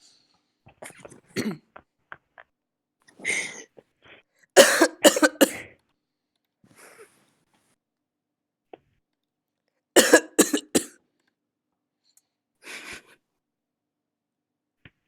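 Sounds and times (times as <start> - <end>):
person fake coughing: 0.9 - 1.7, 4.6 - 5.6, 10.0 - 10.9.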